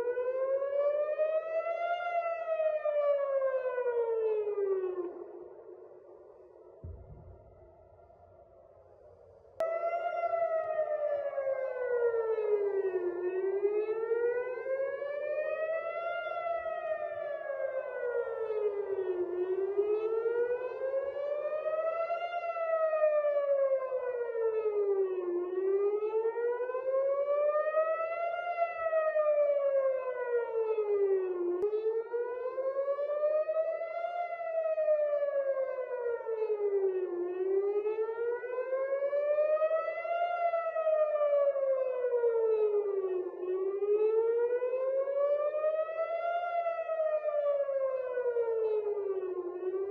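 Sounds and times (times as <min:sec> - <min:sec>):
air-raid siren wailing: 0:00.0 - 0:07.0, 0:09.6 - 0:49.9.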